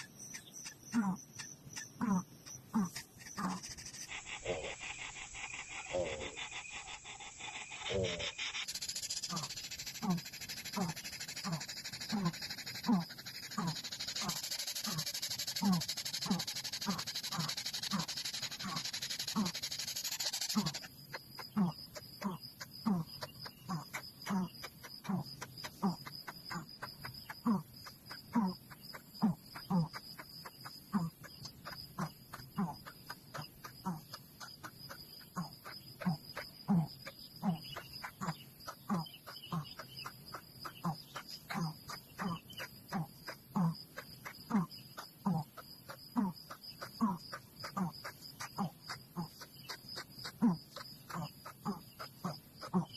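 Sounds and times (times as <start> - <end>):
animal calling: 0.0 - 52.9
high-pitched insect buzz: 2.0 - 52.9.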